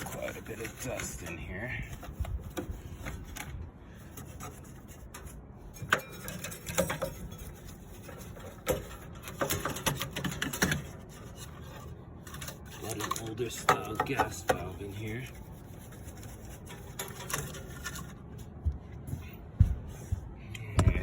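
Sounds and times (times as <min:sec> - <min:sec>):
brush rubbing: 0:04.0 - 0:09.7, 0:10.8 - 0:18.6
hands clicking and tapping on parts: 0:08.1 - 0:11.0, 0:12.3 - 0:14.8, 0:16.6 - 0:21.0.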